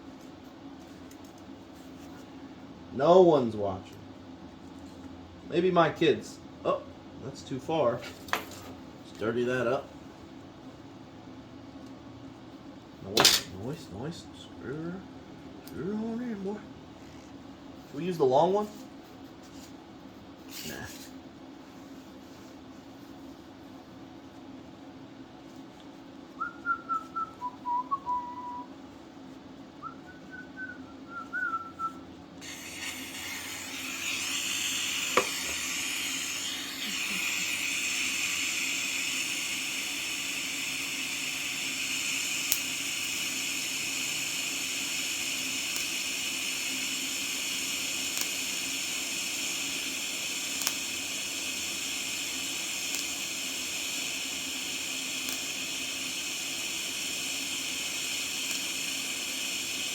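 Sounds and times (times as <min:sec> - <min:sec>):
person whistling: 0:26.4 - 0:28.7, 0:29.8 - 0:32.0
welding arc hissing: 0:32.4 - 0:59.9.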